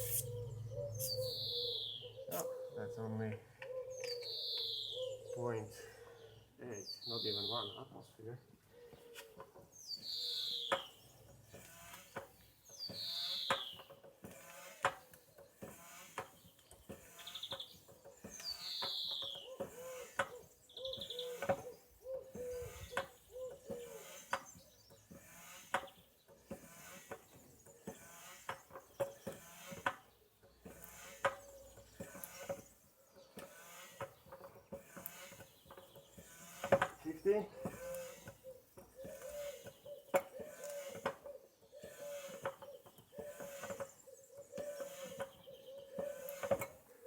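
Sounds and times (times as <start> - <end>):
foot pump clicking and puffing: 10.7 - 47.0.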